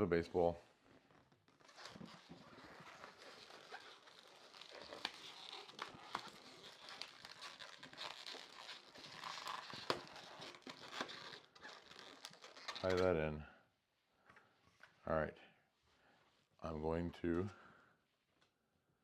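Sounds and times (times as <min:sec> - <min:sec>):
small crinkles and clicks: 0:00.8 - 0:13.1
balloon rubbing and squeaking: 0:01.4 - 0:13.0.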